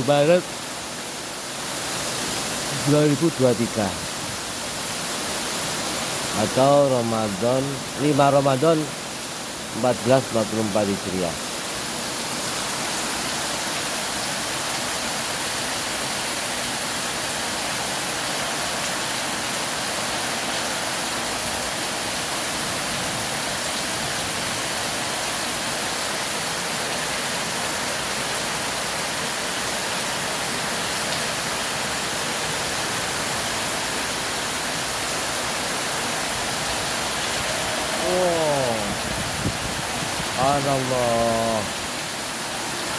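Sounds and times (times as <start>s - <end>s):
heavy rain pouring: 0.0s - 42.9s.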